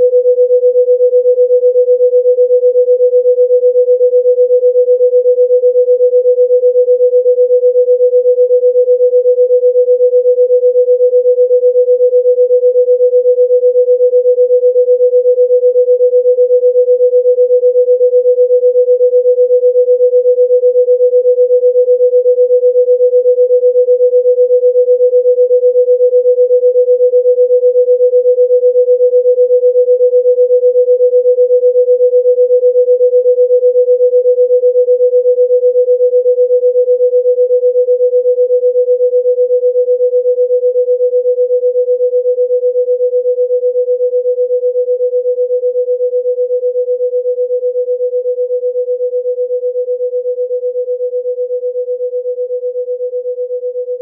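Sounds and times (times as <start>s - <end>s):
steady electronic pure tone: 0.0s - 6.1s.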